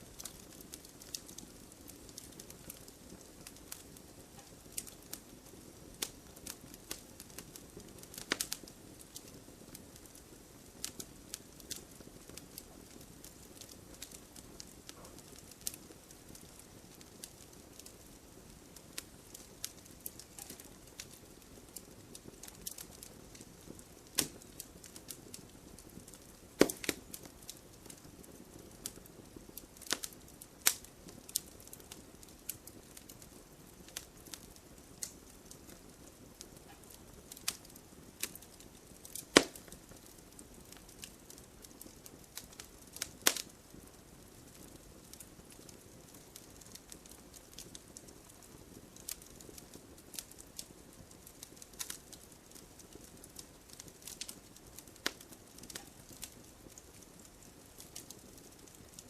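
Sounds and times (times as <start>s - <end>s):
fire hissing: 0.0s - 59.0s
fire snapping: 0.0s - 59.0s
wood fire crackling and popping: 0.0s - 59.0s.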